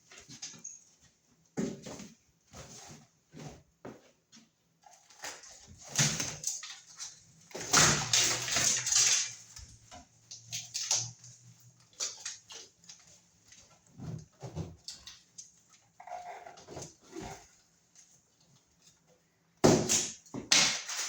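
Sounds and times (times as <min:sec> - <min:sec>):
drywall scraping and crumbling: 0:01.6 - 0:18.2.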